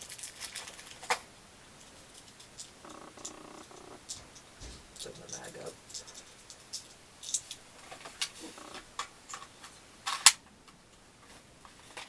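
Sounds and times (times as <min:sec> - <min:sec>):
hard objects clicking and knocking: 0:01.8 - 0:10.8.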